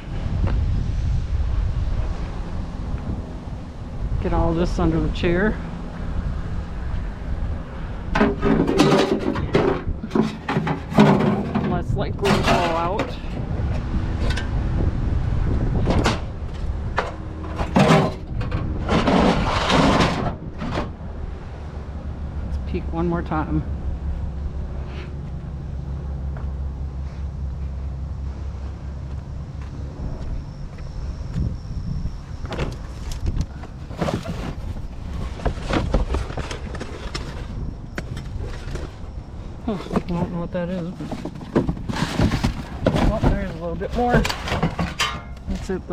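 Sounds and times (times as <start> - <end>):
steady low rumble: 0.0 - 45.9
scrap knocking and clattering: 8.1 - 13.4, 16.9 - 20.9, 41.0 - 45.6
rummaging through trash: 8.2 - 13.5, 15.9 - 21.0, 32.6 - 45.9.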